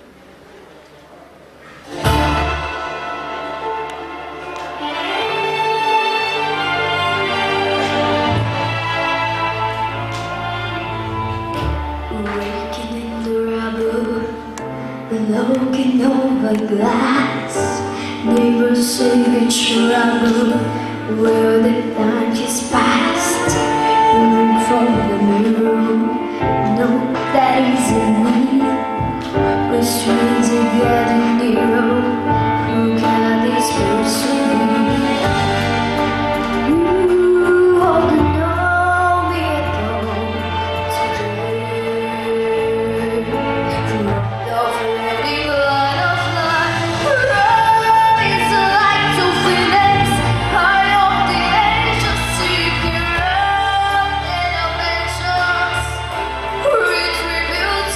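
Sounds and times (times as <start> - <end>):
instrumental accompaniment: 1.6 - 57.9
woman singing pop song: 12.1 - 35.9, 36.6 - 57.9.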